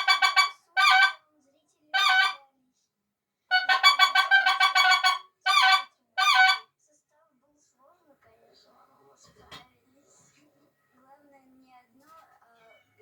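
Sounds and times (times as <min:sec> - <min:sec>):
duck call quacking: 0:00.0 - 0:01.2, 0:02.0 - 0:02.4, 0:03.5 - 0:06.6.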